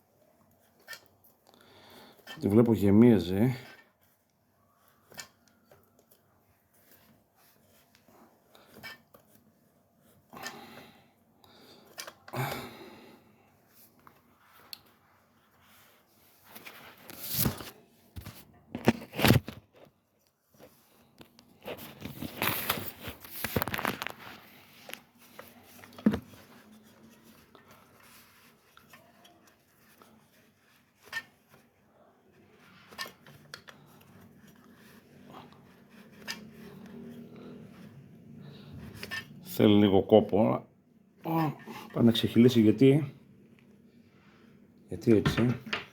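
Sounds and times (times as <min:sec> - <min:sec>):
rustling and scraping handling: 0:00.0 - 0:45.9.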